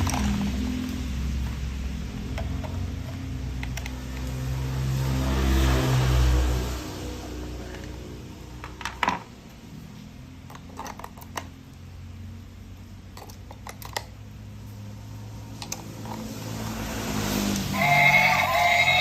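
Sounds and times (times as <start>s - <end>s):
plastic toy parts clicking: 10.4s - 11.8s, 13.2s - 14.2s, 15.6s - 16.3s.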